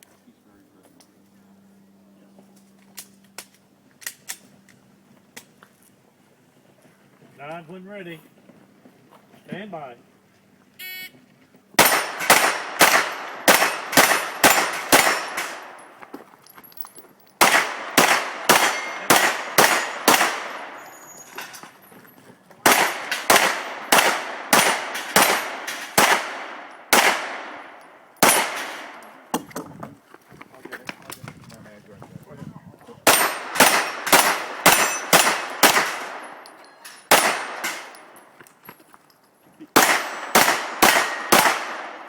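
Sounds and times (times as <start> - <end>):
pistol shots echoing: 11.8 - 15.9, 17.4 - 20.8, 22.6 - 29.3, 33.0 - 36.5, 37.1 - 38.2, 39.8 - 42.0.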